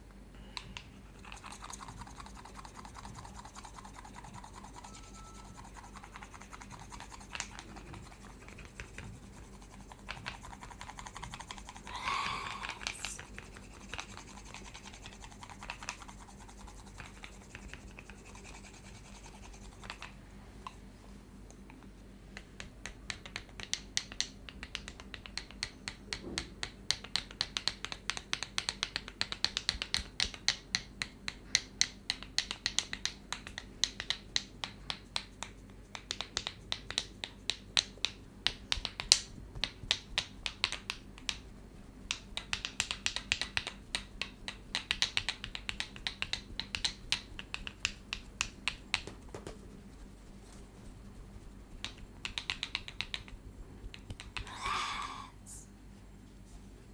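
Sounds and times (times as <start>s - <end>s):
hands tapping on head: 42.1s - 49.7s, 51.7s - 55.3s.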